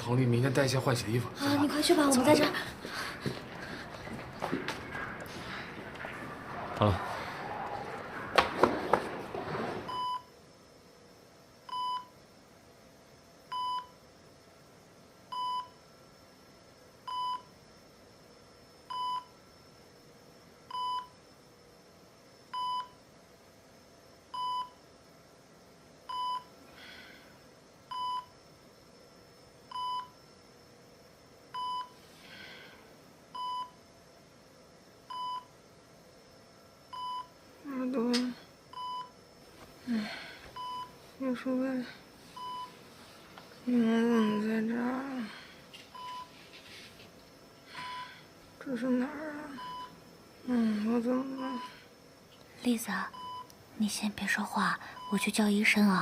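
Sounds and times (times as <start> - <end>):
patient monitor beeping: 9.0 - 10.4, 11.7 - 12.2, 15.3 - 15.8, 17.1 - 17.5, 22.5 - 23.0, 24.4 - 24.8, 26.1 - 26.5, 27.9 - 28.4, 29.7 - 30.3, 31.5 - 32.0, 33.4 - 33.8, 35.1 - 35.6, 36.9 - 37.4, 38.7 - 39.2, 39.9 - 41.0, 42.3 - 42.9, 43.7 - 45.2, 45.9 - 46.4, 47.7 - 48.2, 49.0 - 50.0, 51.0 - 51.8, 53.0 - 53.6, 54.9 - 55.3.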